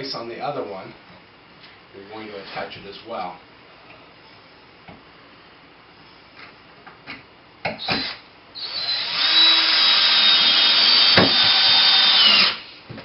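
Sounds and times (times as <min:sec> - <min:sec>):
power drill whining: 0:07.8 - 0:12.7.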